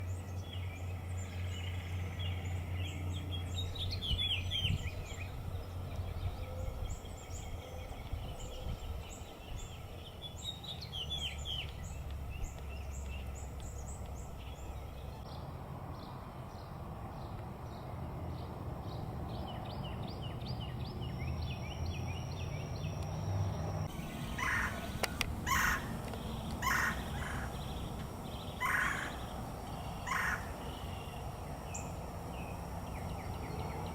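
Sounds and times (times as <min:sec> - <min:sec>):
birds chirping: 0:00.0 - 0:15.4, 0:16.0 - 0:33.9
steady low rumble: 0:16.5 - 0:33.9
lower bird calls: 0:20.5 - 0:33.9.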